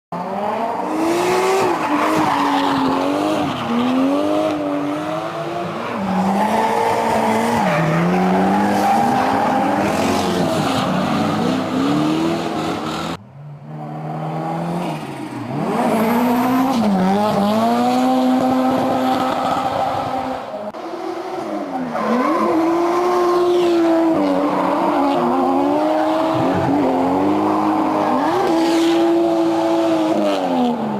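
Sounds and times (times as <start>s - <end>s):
car engines revving hard: 0.2s - 30.9s.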